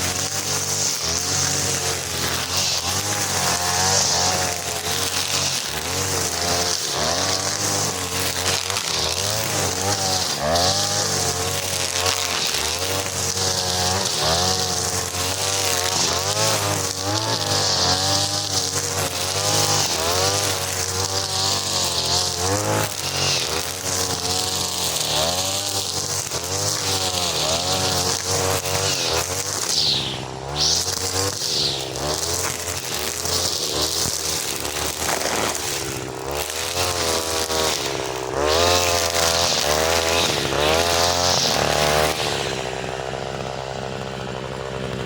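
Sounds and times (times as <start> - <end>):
brush cutter engine revving: 0.0 - 45.0
high hiss: 28.7 - 32.8.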